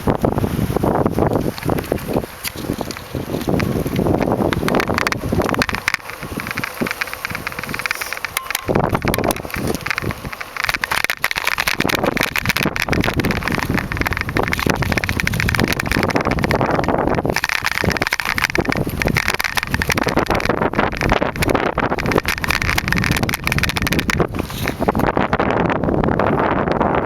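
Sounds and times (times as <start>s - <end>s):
bike rattling: 0.0s - 25.8s
wind buffeting microphone: 0.0s - 27.0s
tyres crunching on gravel: 0.8s - 25.1s.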